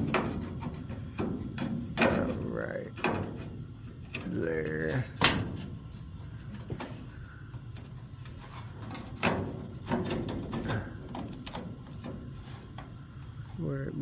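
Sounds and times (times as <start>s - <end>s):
knocks and clunks of sheet metal: 0.0s - 4.3s, 5.1s - 5.8s, 8.8s - 12.4s
low steady hum: 0.0s - 14.0s.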